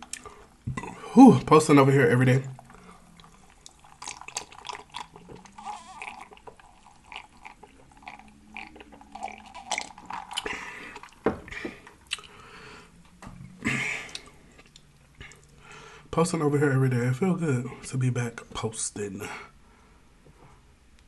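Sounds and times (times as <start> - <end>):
chewing and lip smacking: 0.0 - 1.0, 2.6 - 11.2, 12.0 - 12.4, 14.1 - 15.6.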